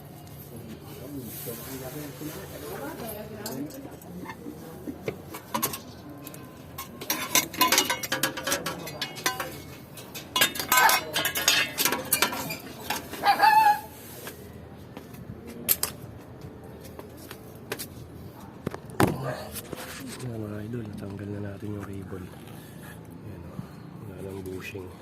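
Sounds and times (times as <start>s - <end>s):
metal tools clinking and rattling: 3.0s - 4.4s, 5.2s - 13.4s.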